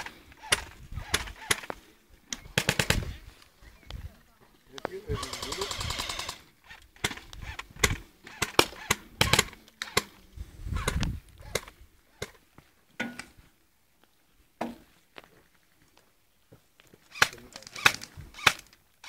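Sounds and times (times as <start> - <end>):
airsoft gun shots: 0.0 - 1.7, 2.6 - 3.1, 7.0 - 10.1.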